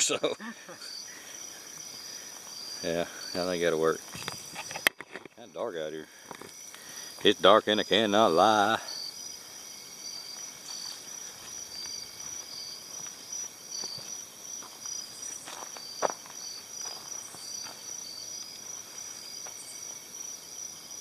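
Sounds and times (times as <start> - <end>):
crickets chirping: 0.0 - 21.0.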